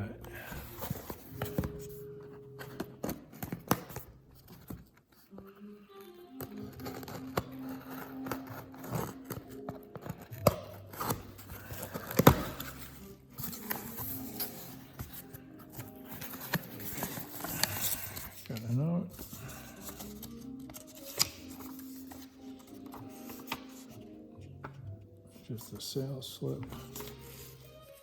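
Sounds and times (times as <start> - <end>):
soft music with long notes: 0.0 - 4.5, 5.1 - 28.0.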